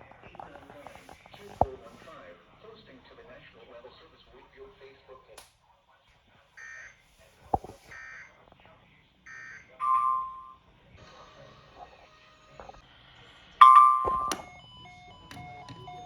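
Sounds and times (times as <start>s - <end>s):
electronic beep tones: 9.8s - 10.6s, 13.6s - 16.0s.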